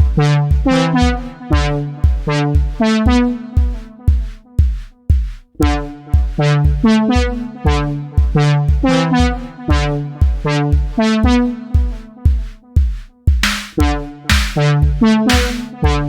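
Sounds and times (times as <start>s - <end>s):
kick drum beat: 0.0s - 16.0s
repeating synth chords: 13.4s - 14.7s, 15.3s - 15.7s.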